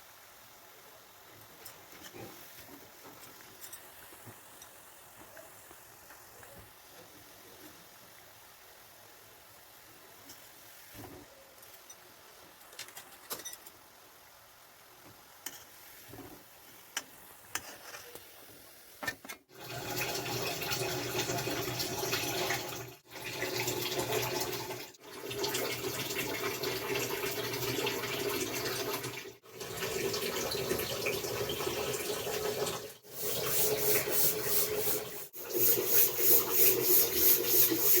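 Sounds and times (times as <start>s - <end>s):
food sizzling in hot oil: 29.4s - 38.0s.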